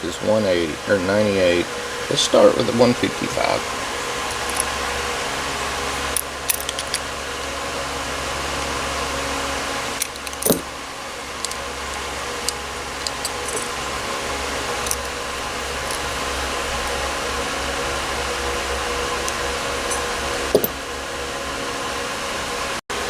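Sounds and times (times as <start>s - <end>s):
fan hum: 0.0s - 23.0s
small metal parts clinking: 4.3s - 4.8s, 6.1s - 7.1s, 10.0s - 10.7s, 11.4s - 13.8s, 14.7s - 16.2s, 19.3s - 20.8s.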